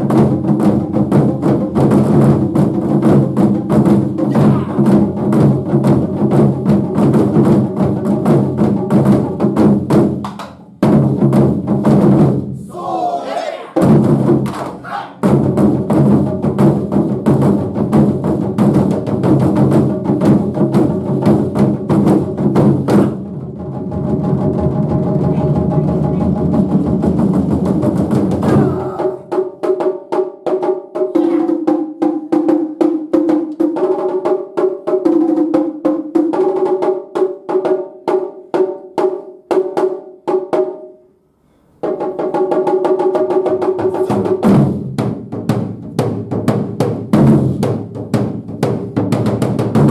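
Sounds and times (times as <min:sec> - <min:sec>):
taiko drums ensemble: 0:00.0 - 0:40.8, 0:41.8 - 0:49.9.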